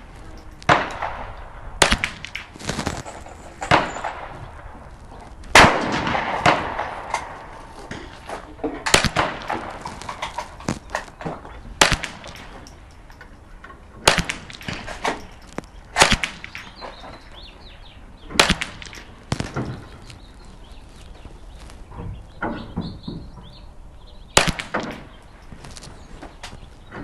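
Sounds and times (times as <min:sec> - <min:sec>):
fainter cracks: 0:00.0 - 0:17.4, 0:18.3 - 0:22.6, 0:24.4 - 0:27.0
rifle shots: 0:00.7 - 0:04.8, 0:05.5 - 0:08.1, 0:08.8 - 0:12.7, 0:14.0 - 0:15.3, 0:15.9 - 0:17.1, 0:18.3 - 0:20.0, 0:24.4 - 0:25.2.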